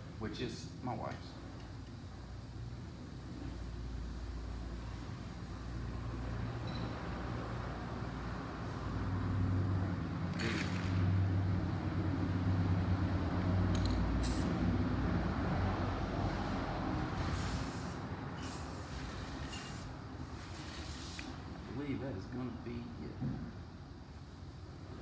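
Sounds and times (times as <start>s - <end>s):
vehicle engine drone: 3.4s - 17.8s
short hisses: 17.4s - 19.9s.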